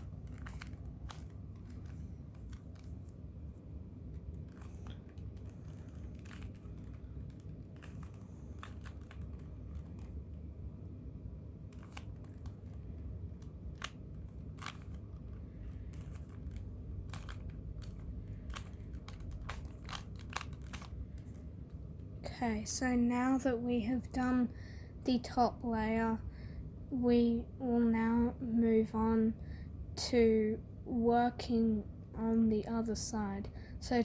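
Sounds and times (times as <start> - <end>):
puzzle cube clicking: 0.0 - 3.3, 4.0 - 10.4, 11.6 - 21.8
low background hum: 0.0 - 34.0.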